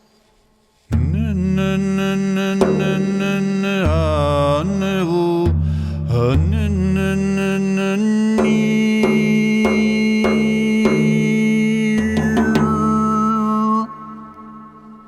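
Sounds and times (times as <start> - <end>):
drum strokes: 0.9 - 7.6, 8.4 - 13.4
chanted vocal drone: 1.0 - 5.5, 6.1 - 15.0.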